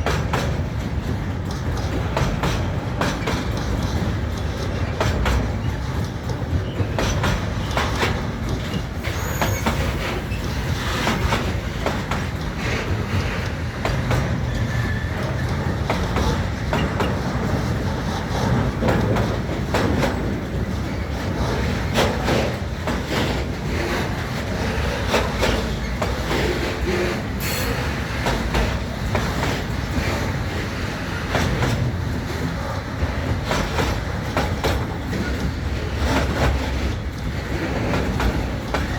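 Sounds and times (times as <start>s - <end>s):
freight train wagons rolling: 0.0s - 38.9s
wheels clicking over rail joints: 0.0s - 38.9s
wheel squeals: 8.7s - 11.2s.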